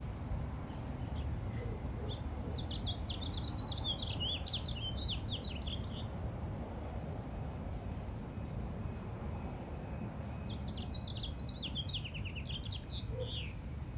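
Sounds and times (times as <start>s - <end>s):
bird chirps: 2.1s - 6.1s, 10.4s - 13.6s
small songbird twittering: 2.1s - 6.1s, 10.4s - 13.6s.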